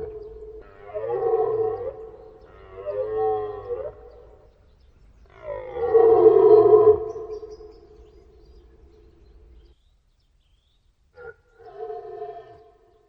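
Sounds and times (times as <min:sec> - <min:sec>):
deer stag roaring: 0:00.0 - 0:04.3.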